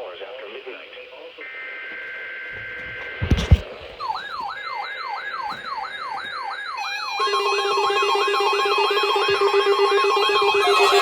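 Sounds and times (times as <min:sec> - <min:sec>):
steady alarm tones: 0:01.4 - 0:11.0
electronic sweeping siren tone: 0:02.6 - 0:11.0.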